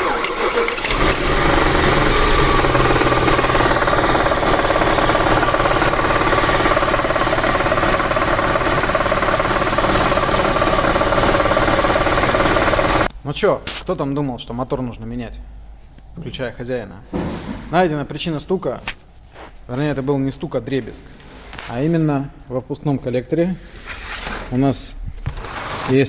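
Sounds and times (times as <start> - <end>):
car engine running: 0.0 - 13.1
fast metallic rattle: 0.0 - 13.1.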